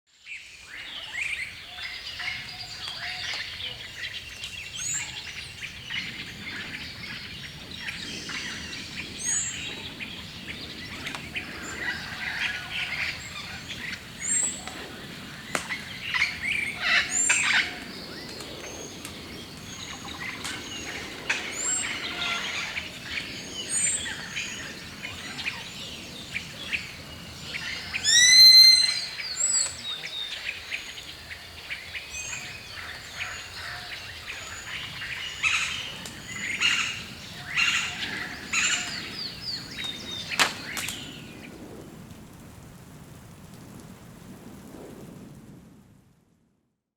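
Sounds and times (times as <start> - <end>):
soft outdoor hiss: 0.2 - 46.1
birds singing and chirping: 0.8 - 41.5.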